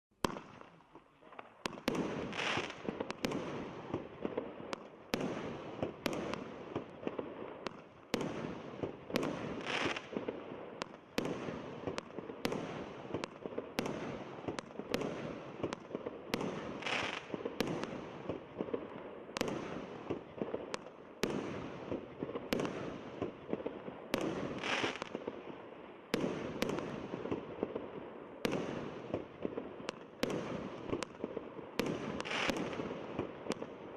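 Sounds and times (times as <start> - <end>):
firework crackle: 1.4 - 33.9
firework launch bangs and bursts: 1.6 - 18.8, 19.4 - 25.4, 26.1 - 27.8, 28.4 - 33.8.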